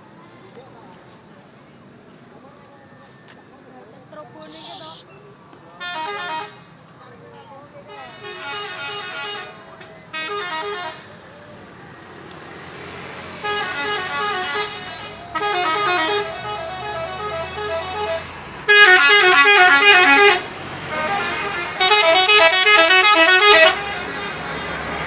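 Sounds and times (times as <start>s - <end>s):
multi-tone bus horns playing tunes: 5.8s - 6.7s, 7.9s - 11.2s, 13.3s - 25.0s.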